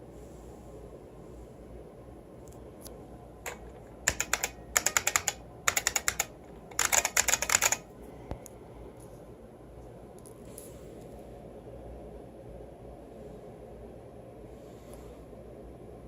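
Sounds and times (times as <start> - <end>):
mechanical keyboard clicking: 3.5 - 7.9.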